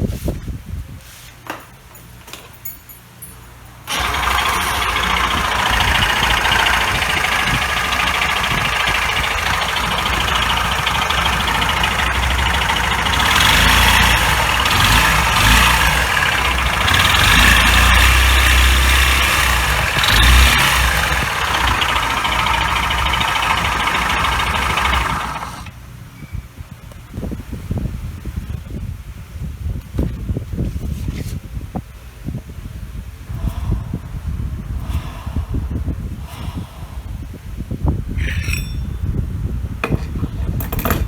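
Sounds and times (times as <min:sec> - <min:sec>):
scooter engine running: 0:03.9 - 0:25.8.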